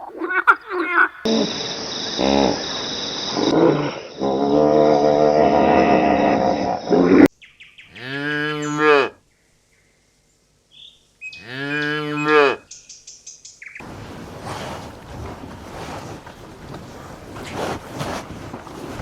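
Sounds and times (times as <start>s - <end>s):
windy hiss: 1.3s - 4.2s, 12.7s - 19.0s
cow mooing: 3.7s - 7.3s, 7.9s - 9.2s, 11.3s - 12.6s.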